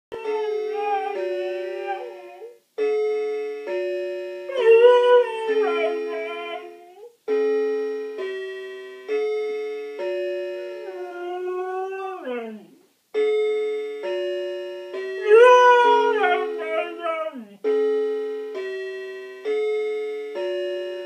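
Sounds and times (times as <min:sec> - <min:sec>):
dog howling: 0:00.1 - 0:02.6, 0:04.5 - 0:07.1, 0:10.9 - 0:12.8, 0:15.2 - 0:17.6
musical doorbell chime: 0:00.1 - 0:21.0.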